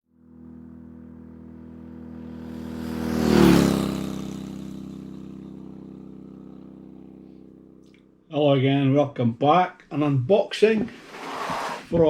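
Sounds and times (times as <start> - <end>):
vehicle passing by: 0.1 - 8.0, 11.0 - 11.9.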